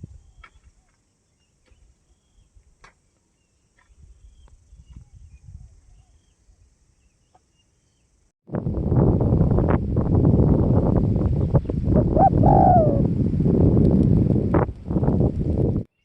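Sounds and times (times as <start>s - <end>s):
small birds chirping: 0.0s - 8.3s.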